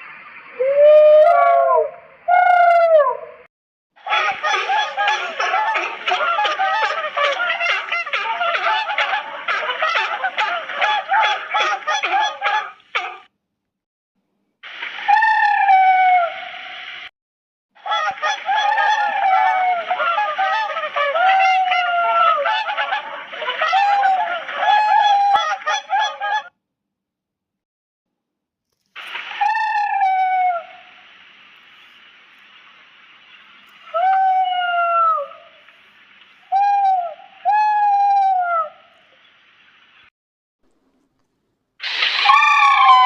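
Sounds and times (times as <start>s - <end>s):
steady hiss: 4.0s - 12.2s, 14.6s - 17.1s, 28.8s - 37.6s, 38.9s - 40.1s, 40.7s - 43.0s
goose-like honking calls: 4.1s - 13.3s
high hooting creature cries: 41.8s - 43.0s.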